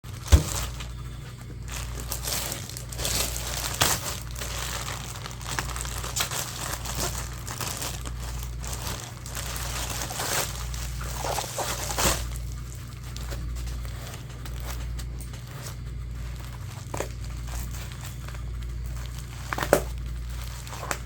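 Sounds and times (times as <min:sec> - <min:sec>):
packaging crinkling: 0:00.0 - 0:21.0
steady low hum: 0:00.0 - 0:21.0.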